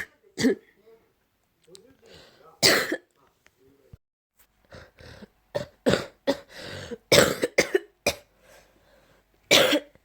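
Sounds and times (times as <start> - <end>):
person coughing with phlegm: 0.0 - 0.7, 2.6 - 3.1, 4.8 - 8.3, 9.5 - 10.0.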